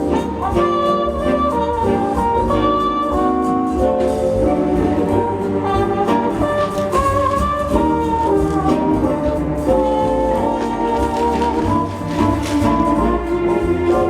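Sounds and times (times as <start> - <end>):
brass jazz show music: 0.0 - 14.0.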